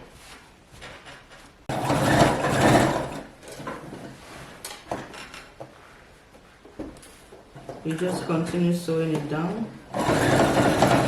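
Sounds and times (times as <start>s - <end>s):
sewing machine stitching: 1.7s - 3.8s, 9.9s - 11.0s.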